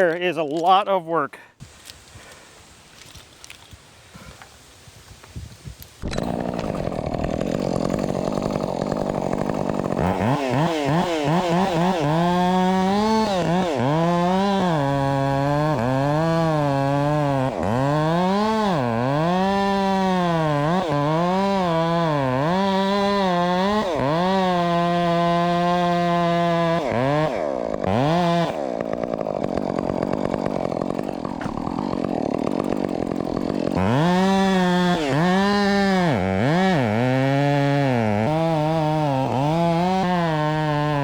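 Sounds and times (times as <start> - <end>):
chainsaw cutting wood: 6.0 - 41.0.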